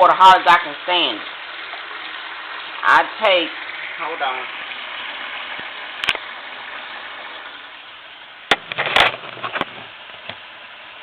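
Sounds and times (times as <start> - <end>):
water running from a tap: 0.0 - 8.5
sharp knocks and clatters: 8.5 - 9.9.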